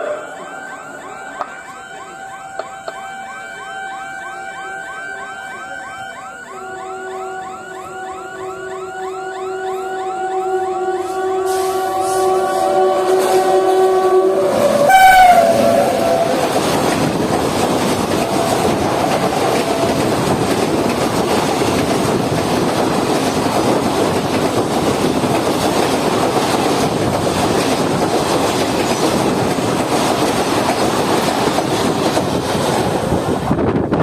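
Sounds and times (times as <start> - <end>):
train passing at speed: 6.9 - 34.0
wheels clattering over rail joints: 14.4 - 33.5.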